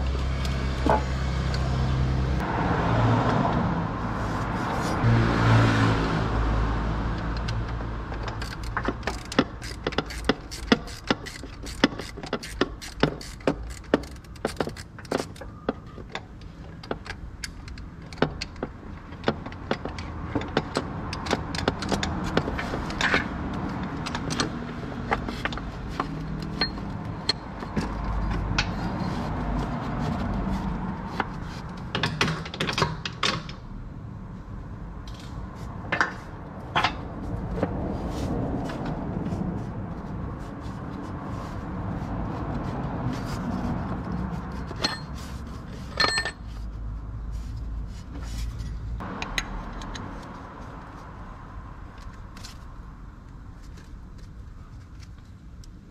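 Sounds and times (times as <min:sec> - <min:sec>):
hand tools clicking and clinking: 0:08.1 - 0:29.0, 0:44.5 - 0:46.5.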